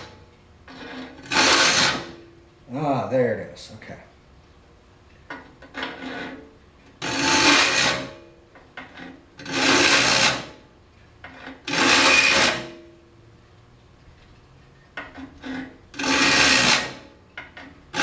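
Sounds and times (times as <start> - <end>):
file scraping saw teeth: 0.8 - 2.2, 9.4 - 10.5, 15.4 - 17.1.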